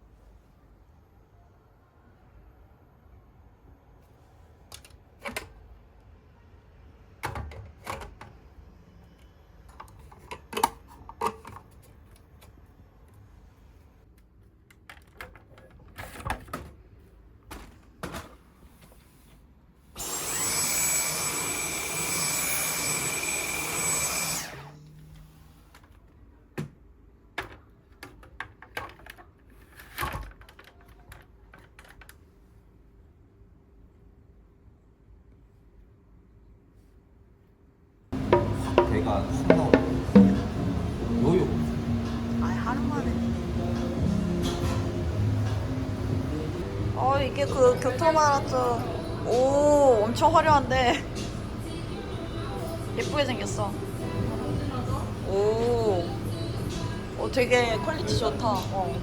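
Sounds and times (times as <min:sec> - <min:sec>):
small electric motor whining: 0:20.0 - 0:24.9.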